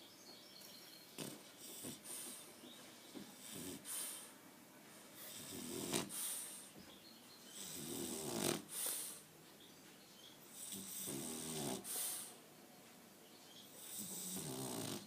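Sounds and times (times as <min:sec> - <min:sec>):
dog snoring: 0:01.2 - 0:02.4, 0:03.4 - 0:04.3, 0:05.2 - 0:06.6, 0:07.5 - 0:09.2, 0:10.5 - 0:12.3, 0:13.7 - 0:15.0.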